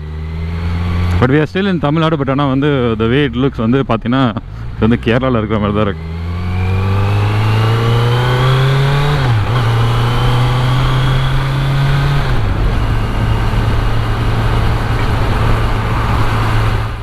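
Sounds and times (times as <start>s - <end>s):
motorcycle engine accelerating: 0.0s - 1.5s, 5.6s - 17.0s
wind rushing: 6.5s - 17.0s.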